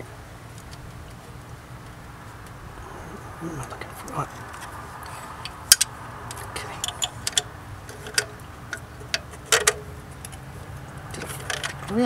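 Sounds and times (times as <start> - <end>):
tools clinking against metal: 6.8 - 9.9.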